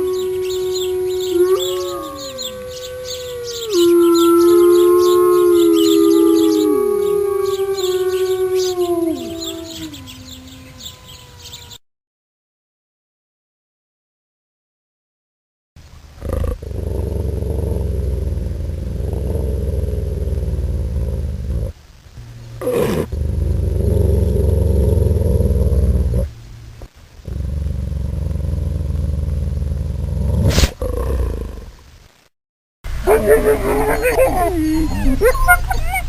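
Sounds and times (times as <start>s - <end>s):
wolf growling: 16.2s - 21.8s, 22.6s - 26.3s, 27.2s - 31.7s, 33.0s - 36.0s.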